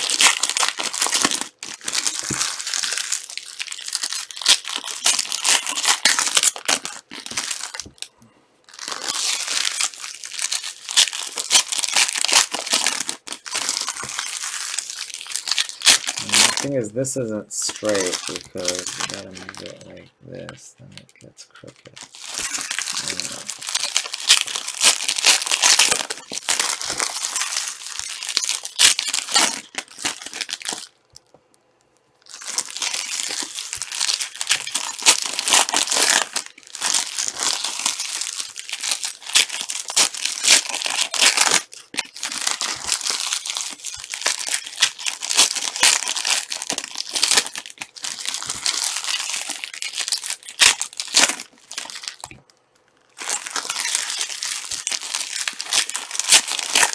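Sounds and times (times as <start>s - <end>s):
card pack wrappers tearing and crinkling: 0.0s - 8.1s, 8.7s - 20.5s, 21.6s - 31.3s, 32.2s - 56.9s.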